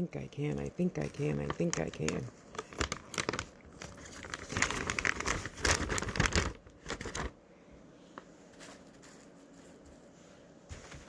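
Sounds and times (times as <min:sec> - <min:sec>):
plastic bag crinkling: 0:00.5 - 0:07.4.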